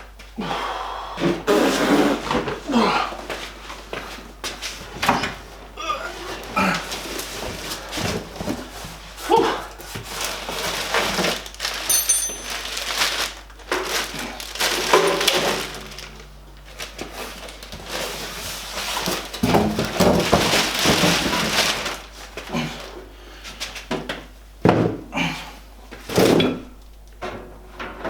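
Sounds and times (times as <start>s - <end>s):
packaging rustling and crinkling: 9.8s - 22.5s.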